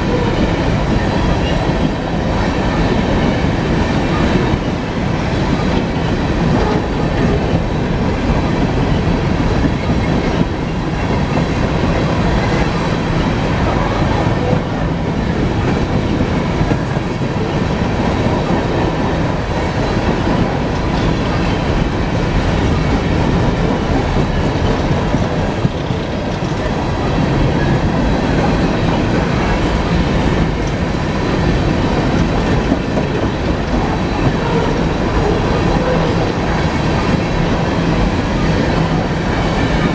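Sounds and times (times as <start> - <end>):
train wheels clattering on rails: 0.0 - 39.9.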